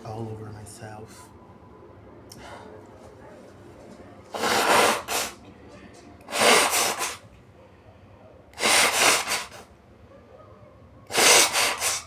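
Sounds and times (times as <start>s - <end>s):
person forcing air through nose: 4.3s - 5.4s, 6.3s - 7.2s, 8.6s - 9.7s, 11.1s - 12.0s.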